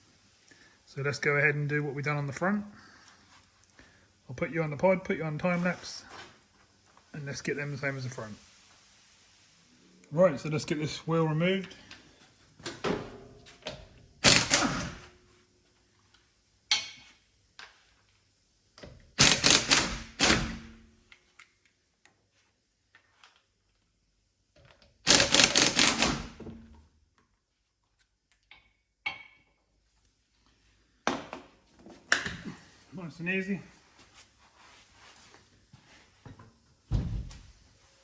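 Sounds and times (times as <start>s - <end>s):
impact wrench rattling: 14.2s - 15.1s, 19.2s - 20.8s, 25.1s - 26.4s.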